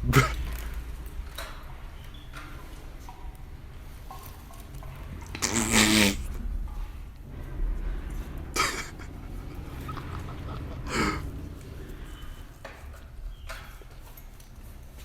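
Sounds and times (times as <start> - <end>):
breathy bursts: 5.0 - 12.7
steady low rumble: 6.1 - 13.6.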